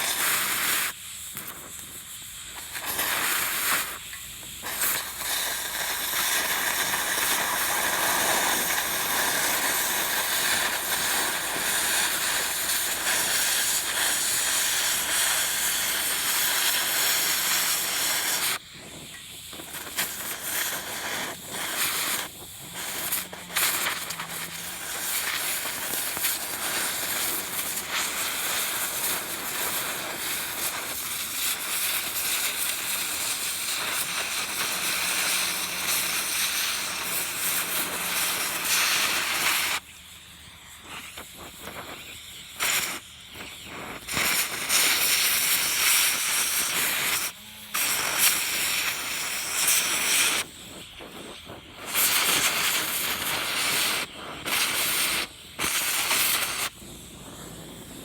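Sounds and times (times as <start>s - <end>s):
steady hissing noise: 0.0s - 58.0s.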